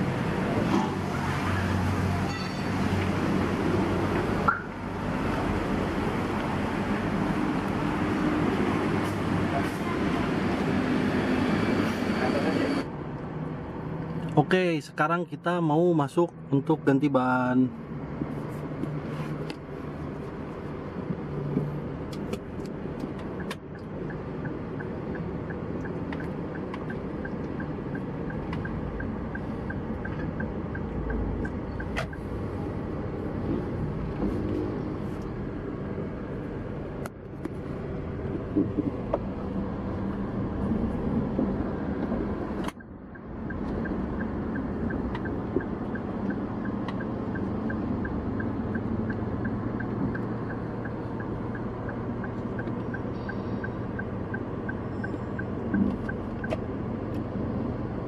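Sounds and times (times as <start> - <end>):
turn signal clicking: 21.5 - 34.6, 41.3 - 57.3.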